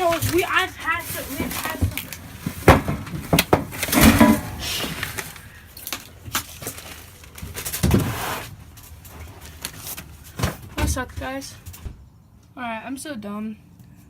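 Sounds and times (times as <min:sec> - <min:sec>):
hard objects clinking and clattering: 0:00.0 - 0:08.0.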